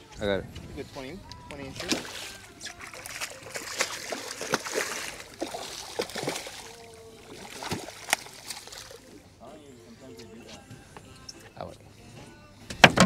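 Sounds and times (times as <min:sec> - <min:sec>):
water splashing and lapping: 0:01.5 - 0:09.3.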